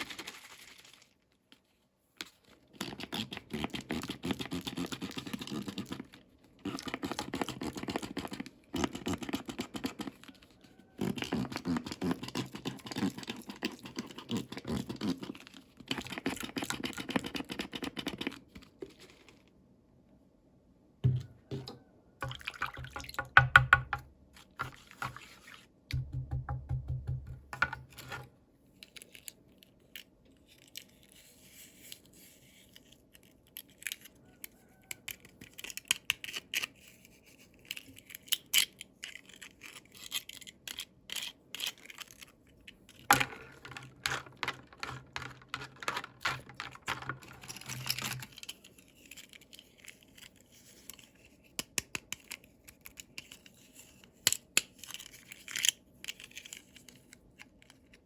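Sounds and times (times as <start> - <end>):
packaging rustling and tearing: 0.0 - 1.4.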